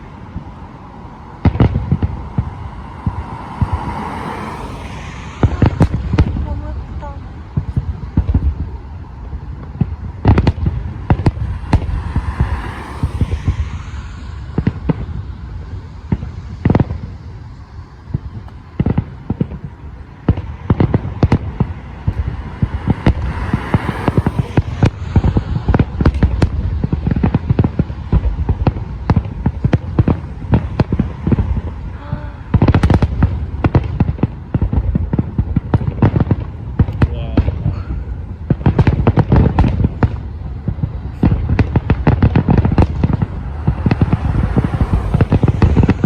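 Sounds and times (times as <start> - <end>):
fireworks booming and cracking: 0.0 - 46.0.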